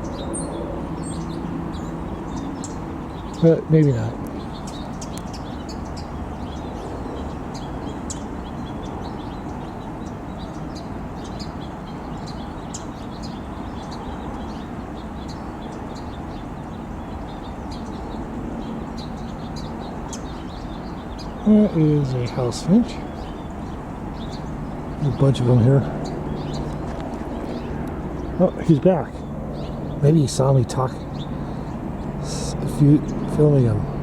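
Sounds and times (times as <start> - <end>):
finches chirping: 0.0 - 34.0
steady background noise: 0.0 - 34.0.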